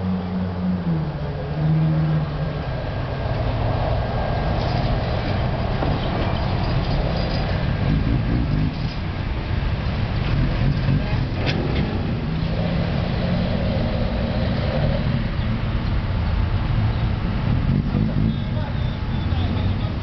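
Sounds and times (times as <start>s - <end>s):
engine low rumble: 0.0s - 20.0s.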